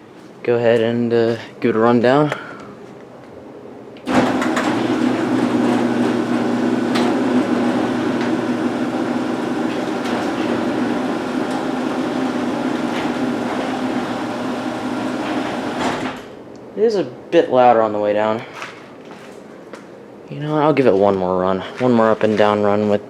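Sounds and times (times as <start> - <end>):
garage door opener motor hum: 4.0 - 16.5.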